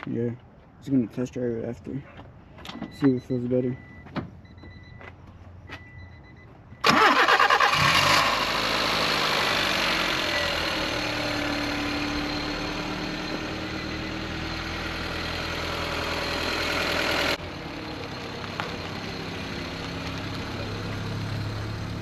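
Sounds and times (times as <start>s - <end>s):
car engine idling: 6.8s - 22.0s.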